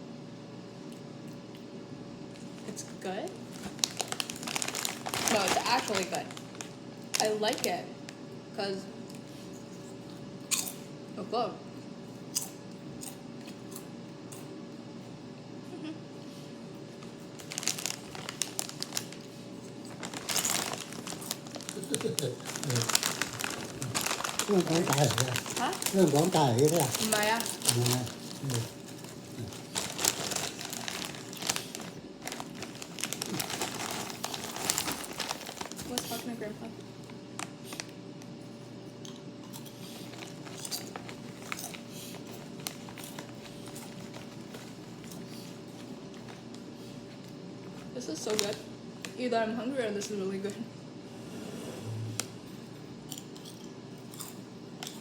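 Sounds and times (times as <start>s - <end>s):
faint steady hum: 0.0s - 55.0s
plastic snack bag crinkling: 3.3s - 8.2s, 17.0s - 36.3s, 40.1s - 45.3s, 48.2s - 48.6s.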